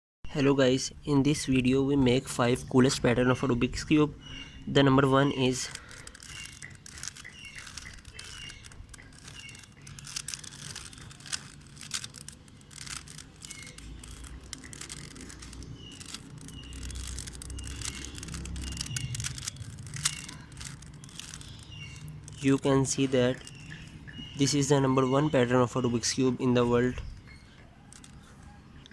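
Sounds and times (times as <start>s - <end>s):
bird chirps: 2.5s - 28.9s
plastic puzzle cube clicking: 5.4s - 23.8s, 27.0s - 28.9s.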